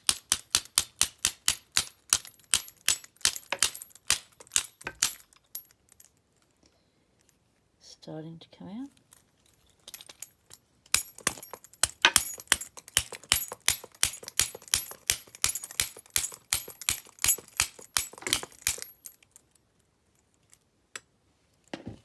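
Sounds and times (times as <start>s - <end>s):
rapid metallic clicking: 11.0s - 19.1s.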